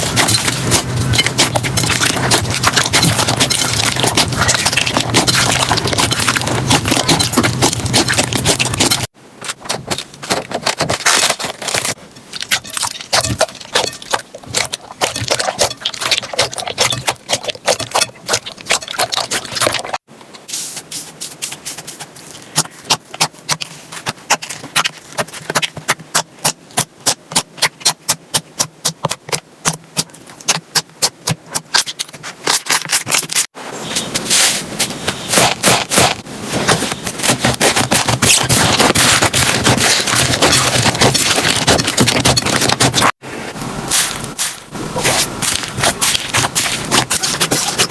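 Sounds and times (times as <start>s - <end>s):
slime crackling and popping: 44.0s - 47.9s.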